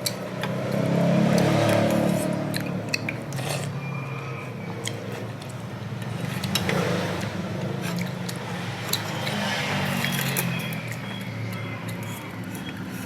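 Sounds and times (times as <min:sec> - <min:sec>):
utensils clinking against bowl: 0:04.8 - 0:13.0.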